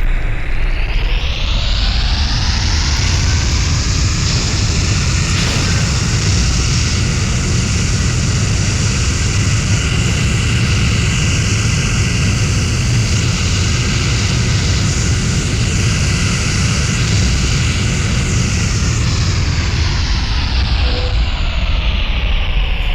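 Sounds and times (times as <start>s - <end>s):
jet engine roaring: 1.2s - 9.2s
faint high whine: 2.6s - 8.0s.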